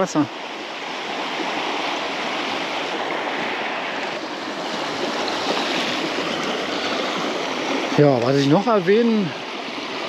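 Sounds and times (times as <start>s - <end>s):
river rushing: 0.0s - 10.0s.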